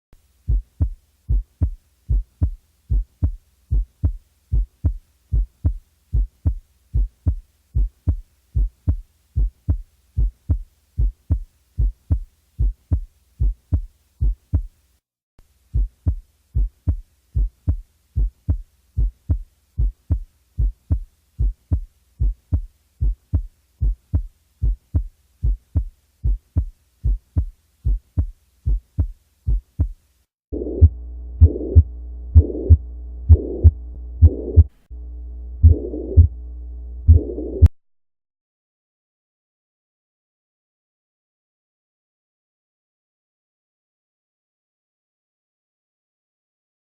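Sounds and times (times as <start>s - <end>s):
heartbeat thumps: 0.5s - 14.7s, 15.7s - 30.0s, 30.6s - 34.8s, 35.6s - 36.4s, 37.0s - 37.7s.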